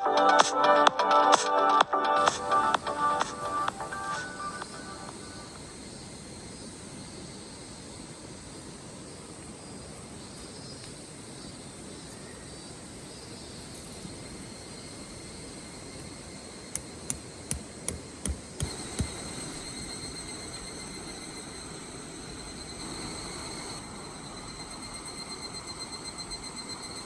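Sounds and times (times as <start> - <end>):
faint high steady tones: 0.0 - 6.3.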